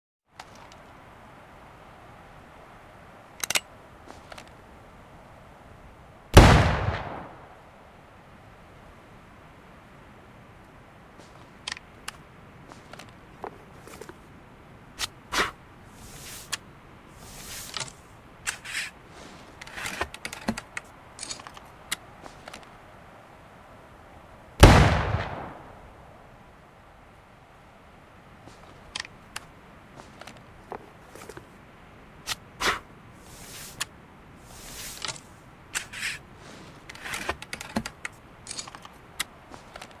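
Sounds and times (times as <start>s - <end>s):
short scraping swishes: 15.0s - 20.1s, 32.3s - 37.4s.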